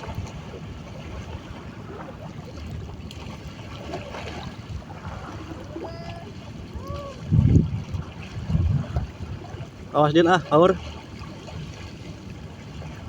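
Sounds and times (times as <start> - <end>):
wind and water rumble: 0.0 - 13.0
faint short calls: 5.4 - 7.3.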